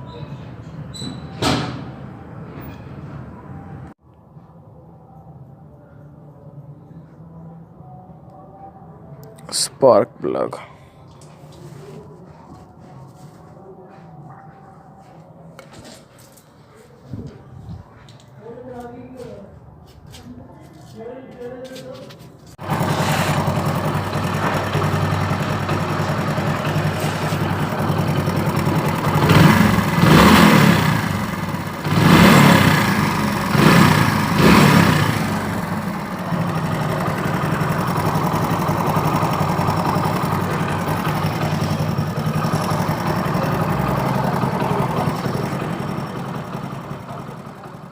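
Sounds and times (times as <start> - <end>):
motorcycle engine idling and revving: 22.6 - 47.9.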